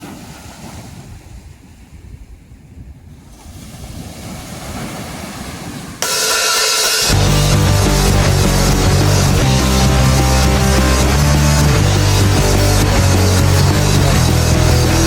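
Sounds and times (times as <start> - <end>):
ocean surf rumble: 0.0 - 15.0
heavy music: 6.0 - 15.0.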